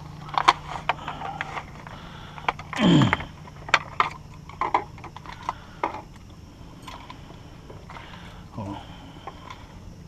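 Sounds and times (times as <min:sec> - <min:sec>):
small objects clicking and knocking: 0:00.0 - 0:07.2.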